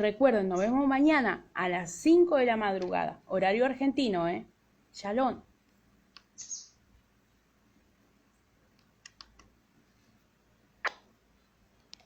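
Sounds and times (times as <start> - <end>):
scattered clicks: 8.7 - 9.5.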